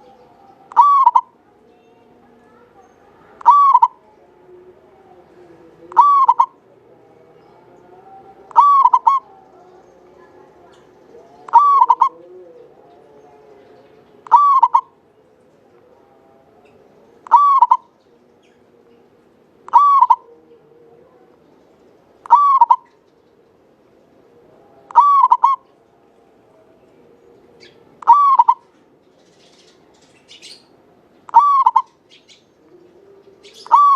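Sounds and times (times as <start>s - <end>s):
dove cooing: 0.0s - 1.6s, 3.3s - 4.2s, 5.0s - 6.8s, 8.2s - 13.1s, 14.2s - 15.1s, 16.6s - 21.4s, 22.2s - 23.6s, 24.3s - 25.8s, 27.4s - 28.8s, 31.3s - 33.9s.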